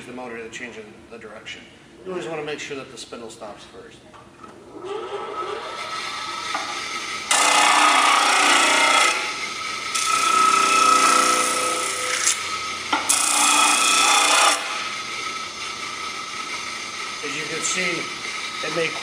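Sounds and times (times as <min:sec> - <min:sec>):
disc sander whining: 0:04.8 - 0:19.0
steel grinding on sanding disc: 0:13.3 - 0:19.0.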